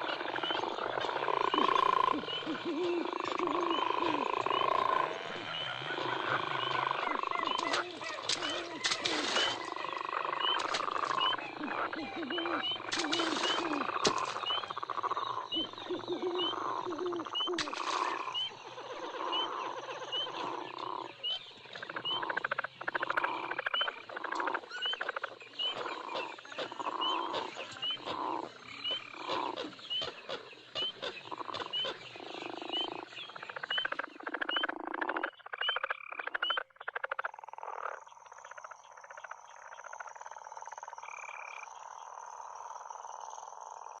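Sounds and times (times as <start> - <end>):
frogs croaking: 0.0 - 44.0.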